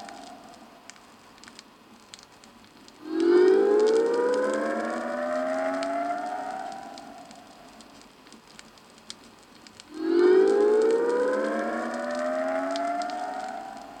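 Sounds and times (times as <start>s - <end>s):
siren-like rising tone: 0.0s - 0.8s, 3.0s - 7.8s, 9.9s - 14.0s.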